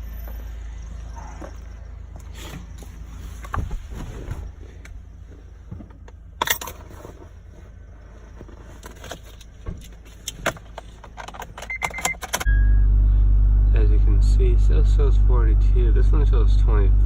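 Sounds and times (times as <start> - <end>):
car engine starting: 0.0 - 17.0
short electronic tones: 11.7 - 13.2.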